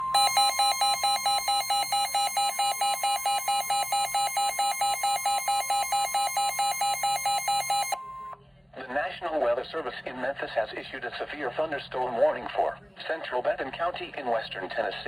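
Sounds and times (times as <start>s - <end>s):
steady alarm tone: 0.0s - 8.3s.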